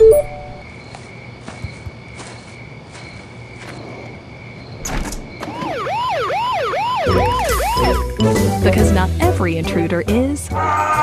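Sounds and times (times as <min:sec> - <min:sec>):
electronic alarm siren whooping: 0:05.4 - 0:08.4.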